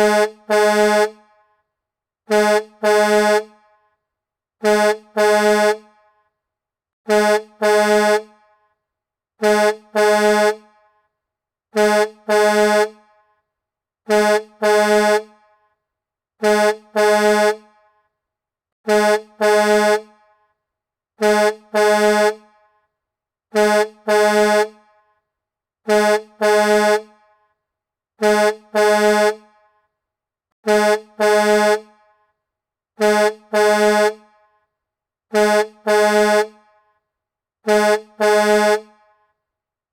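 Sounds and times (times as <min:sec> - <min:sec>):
truck horn double blasts: 0:00.0 - 0:01.4, 0:02.3 - 0:03.8, 0:04.6 - 0:06.1, 0:07.1 - 0:08.6, 0:09.4 - 0:11.1, 0:11.7 - 0:13.3, 0:14.1 - 0:15.6, 0:16.4 - 0:18.0, 0:18.8 - 0:20.5, 0:21.2 - 0:22.8, 0:23.5 - 0:25.0, 0:25.8 - 0:27.4, 0:28.2 - 0:29.7, 0:30.6 - 0:32.2, 0:33.0 - 0:34.4, 0:35.3 - 0:36.8, 0:37.6 - 0:39.2.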